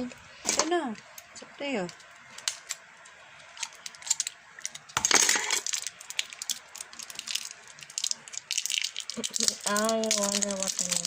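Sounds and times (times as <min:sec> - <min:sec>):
metal balls clicking together: 0:03.6 - 0:11.0.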